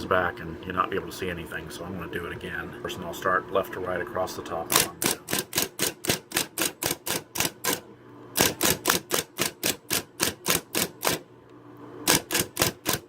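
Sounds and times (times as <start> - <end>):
typewriter motor hum: 4.6 - 11.3, 12.0 - 13.0
typewriter keys striking: 4.7 - 7.8, 8.4 - 11.2, 12.1 - 13.0.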